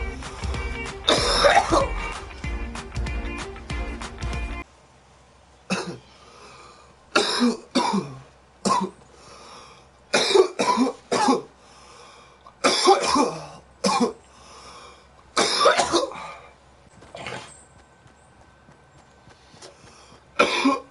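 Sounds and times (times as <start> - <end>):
boy coughing: 1.1 - 2.0, 5.7 - 6.1, 7.2 - 9.0, 10.2 - 11.5, 12.6 - 14.2, 15.4 - 16.4, 20.4 - 20.9.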